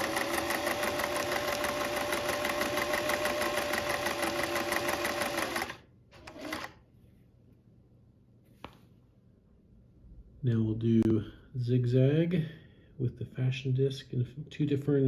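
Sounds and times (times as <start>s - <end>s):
sewing machine stitching: 0.0s - 6.8s.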